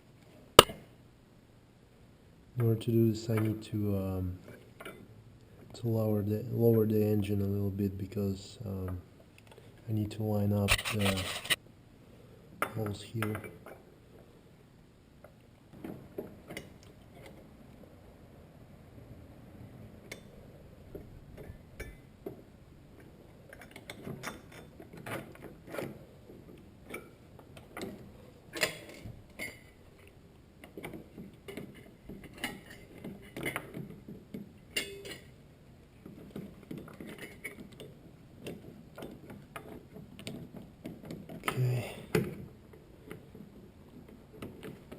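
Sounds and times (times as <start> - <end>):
metallic clicks and clanks of tools: 10.7 - 11.6.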